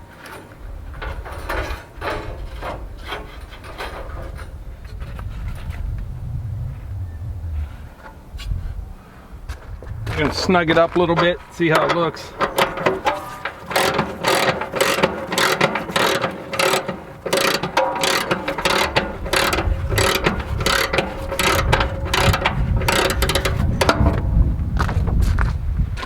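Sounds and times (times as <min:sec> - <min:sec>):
low rumble: 0:04.4 - 0:11.6, 0:23.6 - 0:26.0
hand ratchet clicking: 0:11.5 - 0:24.2.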